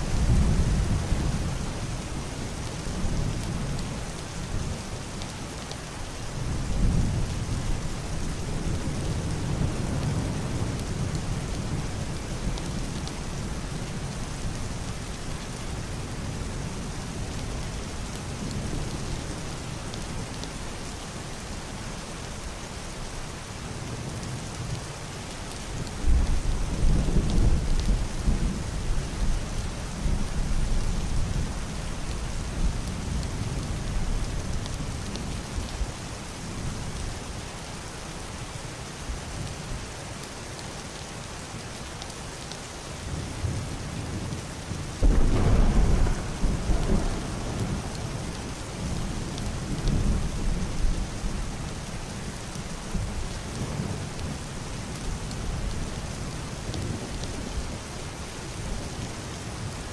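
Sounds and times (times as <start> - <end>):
heavy rain on a roof: 0.0 - 59.9
rolling thunder: 45.0 - 51.0.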